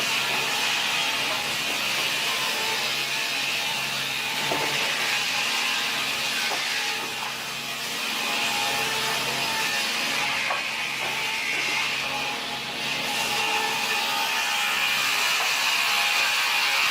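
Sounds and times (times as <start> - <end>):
powered saw cutting wood: 0.0 - 16.9.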